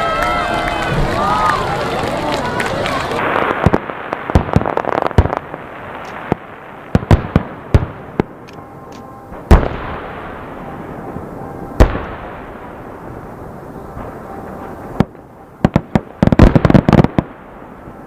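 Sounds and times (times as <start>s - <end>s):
firework bangs: 0.6s - 8.7s, 9.3s - 13.3s, 13.9s - 17.9s
heavy firework booms with rumble: 3.2s - 8.4s, 9.4s - 13.0s, 14.0s - 17.5s.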